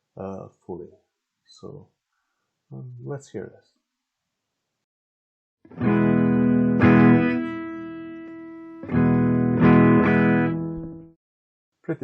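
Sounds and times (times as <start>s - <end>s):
electric guitar chords: 5.7s - 11.1s.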